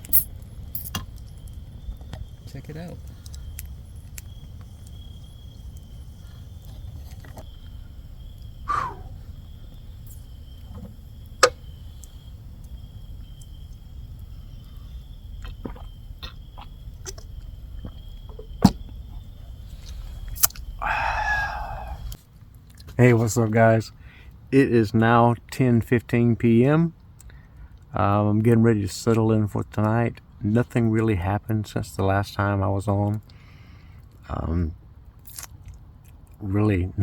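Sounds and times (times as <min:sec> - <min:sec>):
campfire crackling and popping: 0:00.0 - 0:23.1.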